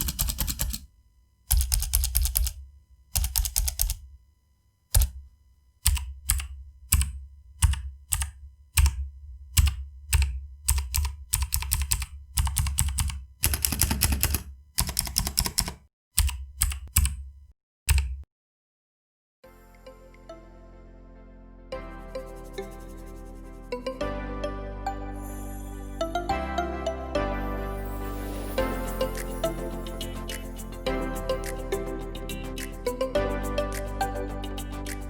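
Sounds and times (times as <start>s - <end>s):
keyboard typing clicks: 0.0s - 0.9s, 1.5s - 4.1s, 4.9s - 5.2s, 5.8s - 17.3s, 17.9s - 18.2s.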